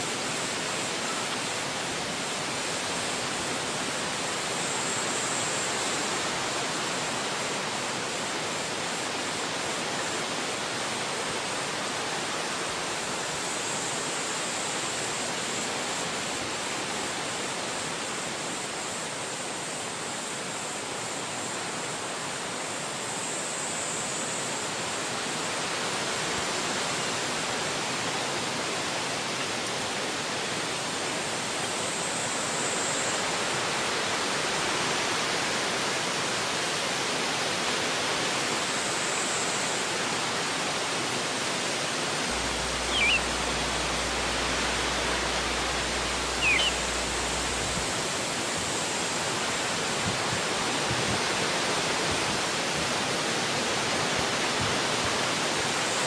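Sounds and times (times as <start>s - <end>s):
steady rain falling: 0.0s - 56.0s
brief high chirps: 42.6s - 43.8s, 46.2s - 47.7s.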